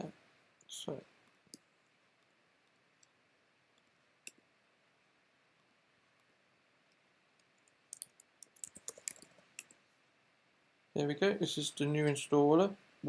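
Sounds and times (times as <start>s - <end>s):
computer keyboard typing: 8.0s - 9.7s.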